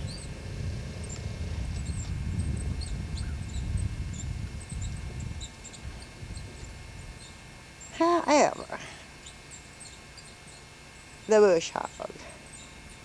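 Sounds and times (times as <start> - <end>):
low uneven rumble on microphone: 0.0 - 13.0
small birds chirping: 0.0 - 13.0.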